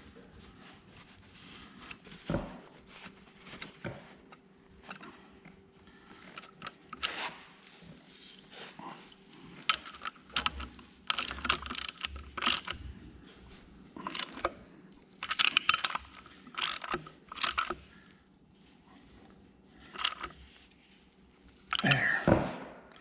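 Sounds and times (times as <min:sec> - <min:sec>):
socket ratchet clicking: 0:09.7 - 0:12.8, 0:14.1 - 0:14.6, 0:15.2 - 0:17.8, 0:20.0 - 0:20.4.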